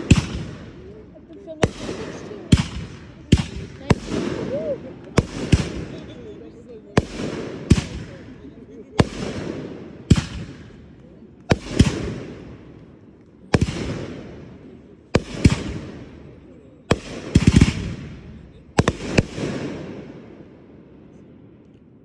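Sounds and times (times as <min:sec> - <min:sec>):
fireworks banging: 0:00.0 - 0:21.9.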